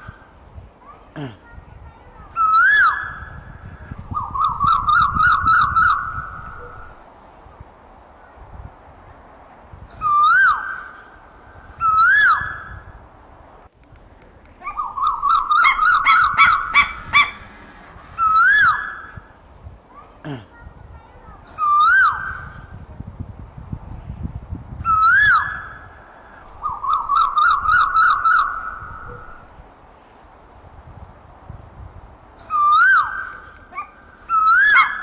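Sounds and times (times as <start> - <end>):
bird calling whistled notes: 2.4 - 7.0, 9.9 - 12.9, 14.6 - 19.2, 21.5 - 22.7, 24.8 - 29.5, 32.4 - 35.0.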